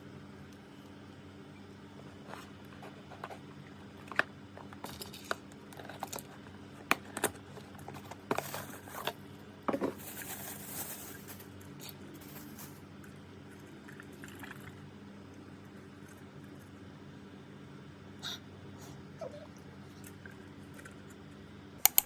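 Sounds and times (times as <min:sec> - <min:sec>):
sharp clicks and taps: 0:21.8 - 0:22.0.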